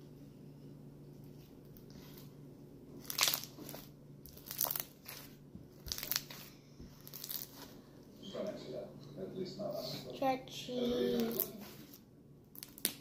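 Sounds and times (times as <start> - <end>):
slime crackling when squeezed: 3.0 - 7.7, 12.5 - 13.0.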